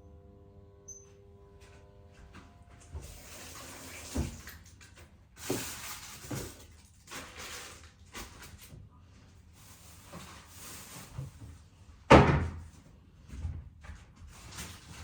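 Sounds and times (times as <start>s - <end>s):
tap running into a sink: 3.0s - 6.5s.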